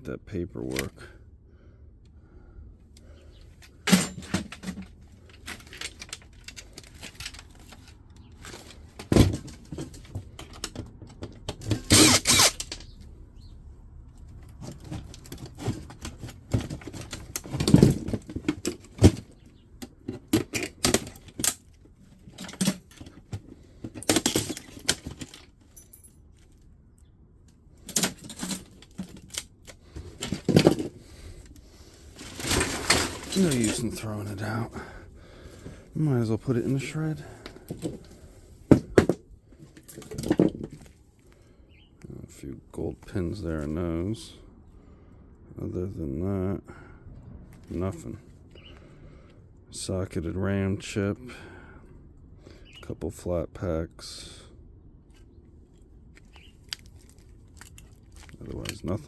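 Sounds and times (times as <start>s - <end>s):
plastic and metal parts clacking: 3.0s - 13.1s, 14.2s - 26.7s, 27.4s - 31.6s, 32.2s - 34.5s, 36.5s - 41.0s, 55.1s - 59.0s.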